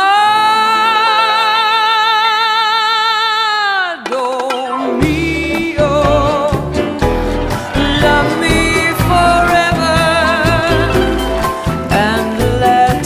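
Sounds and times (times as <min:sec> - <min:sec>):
singing with vibrato: 0:00.0 - 0:13.0
bass and beat: 0:05.1 - 0:13.0.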